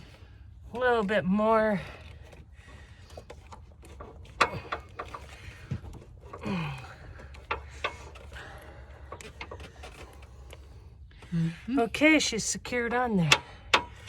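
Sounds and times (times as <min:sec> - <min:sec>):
hands working hose clamp: 0:01.9 - 0:11.3, 0:13.2 - 0:14.0.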